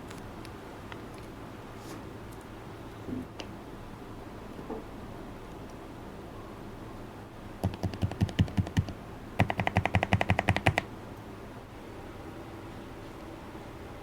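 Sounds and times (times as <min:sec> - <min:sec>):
typing on a keyboard: 0:07.6 - 0:10.9.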